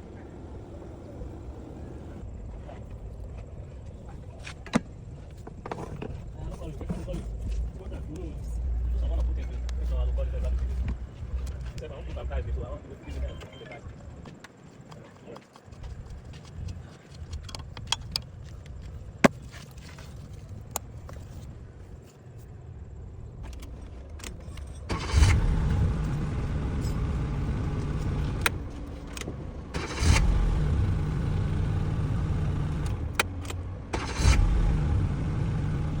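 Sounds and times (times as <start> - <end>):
car engine cranking: 4.6 - 14.1, 23.4 - 36.0.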